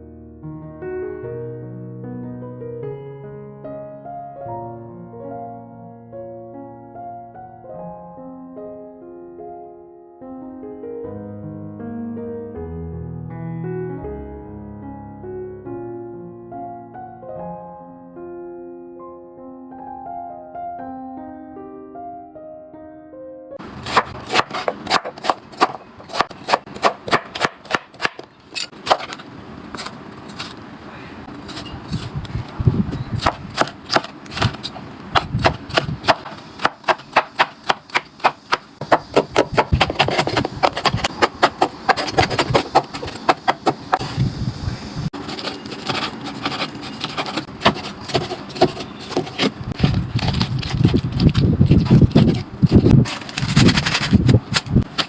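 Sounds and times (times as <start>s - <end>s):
knife chopping on cutting board: 23.7s - 29.2s, 33.2s - 44.0s, 45.4s - 52.8s.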